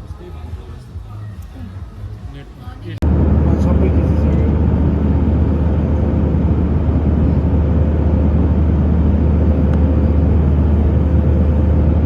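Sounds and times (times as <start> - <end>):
airliner cabin drone: 3.0 - 12.0
faint steady hum: 3.0 - 12.0.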